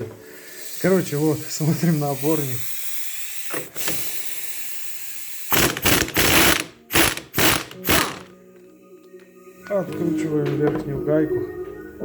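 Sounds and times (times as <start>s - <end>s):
ratchet wrench ratcheting: 0.5s - 8.3s.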